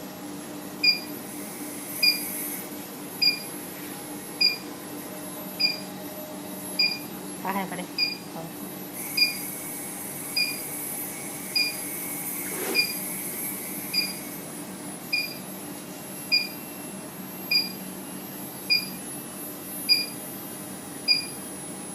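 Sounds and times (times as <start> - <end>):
induction heater humming and whining: 0.0 - 21.9
short beeps: 5.6 - 5.8, 6.8 - 7.1, 8.0 - 8.2, 14.0 - 14.2, 15.1 - 15.4, 17.5 - 17.8, 18.7 - 19.0, 19.9 - 20.1.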